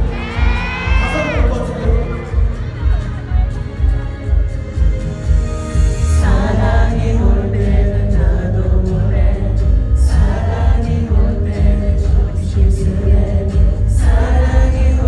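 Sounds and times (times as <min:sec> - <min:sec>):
man singing live: 0:00.0 - 0:02.8, 0:06.0 - 0:15.0
band with heavy bass: 0:00.0 - 0:15.0.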